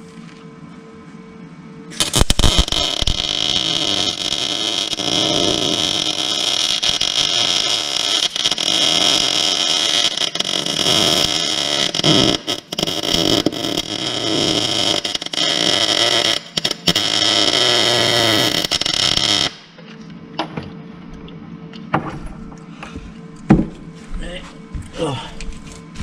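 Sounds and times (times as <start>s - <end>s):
welding arc crackling hiss: 1.9s - 19.8s.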